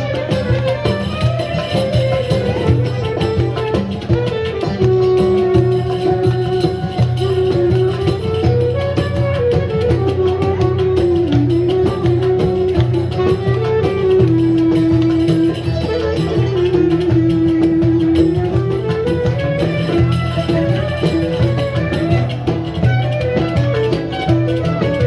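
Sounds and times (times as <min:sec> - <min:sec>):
drum beat: 0:00.0 - 0:25.0
rattling hand percussion: 0:00.0 - 0:25.0
sliding folk melody: 0:00.0 - 0:25.0.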